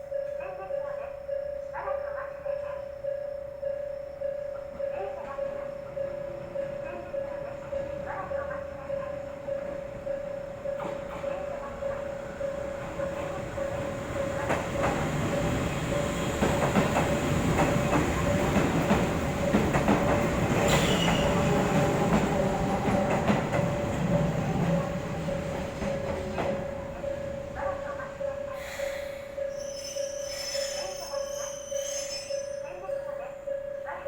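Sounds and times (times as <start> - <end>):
level-crossing alarm bell: 0.0 - 34.0
train wheels clattering: 12.7 - 28.3.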